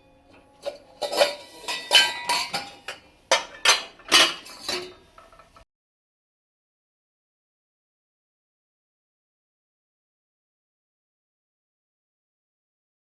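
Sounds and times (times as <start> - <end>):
metal dishes clinking: 0.3 - 5.6.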